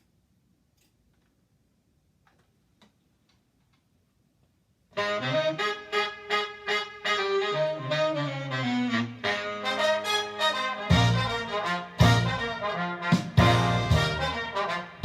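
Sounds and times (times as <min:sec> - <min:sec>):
wind and brass music with beats: 0:05.0 - 0:15.0.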